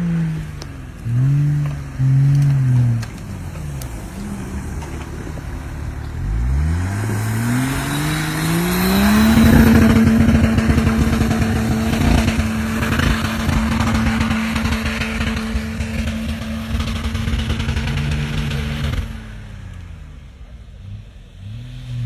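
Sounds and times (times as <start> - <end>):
off-road vehicle engine revving: 0.0 - 22.0.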